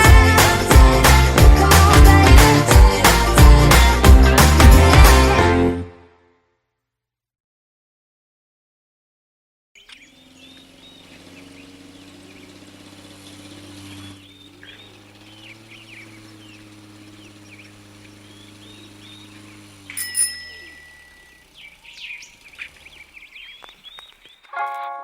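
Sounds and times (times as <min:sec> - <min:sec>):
birds chirping: 0:09.8 - 0:25.0
brief high tone: 0:19.9 - 0:21.4.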